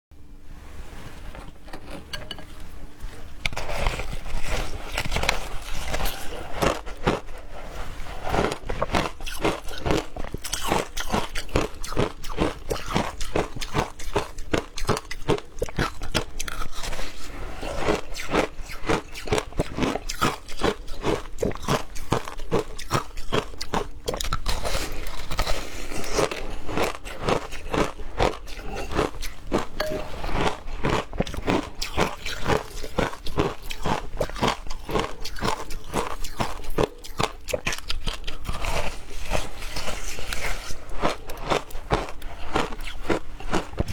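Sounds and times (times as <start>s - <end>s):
ice being chewed: 1.3s - 43.9s.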